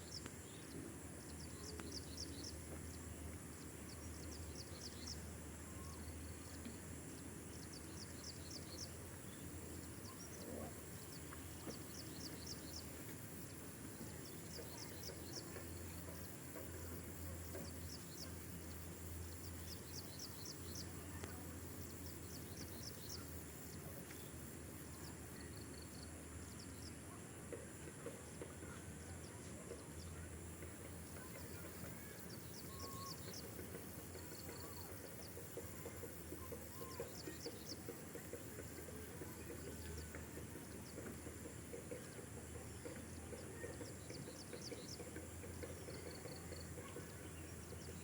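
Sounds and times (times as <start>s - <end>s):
birds chirping: 28.4s - 48.0s.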